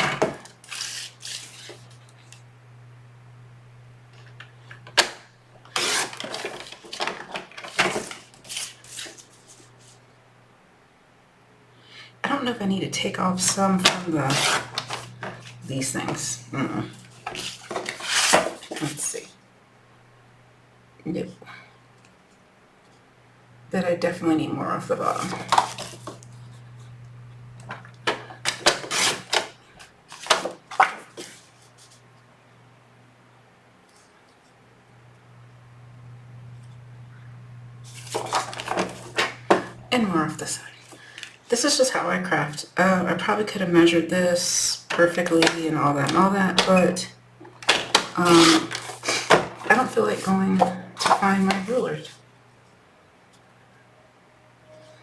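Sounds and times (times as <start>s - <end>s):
rasping cutting of cardstock: 5.7s - 7.0s, 13.8s - 15.5s, 17.1s - 18.8s, 28.4s - 29.5s, 47.7s - 49.4s.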